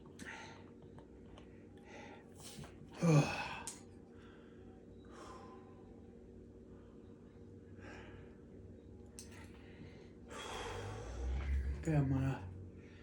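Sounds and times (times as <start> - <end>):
man breathing hard: 1.8 - 6.0, 7.7 - 8.5, 9.5 - 11.8.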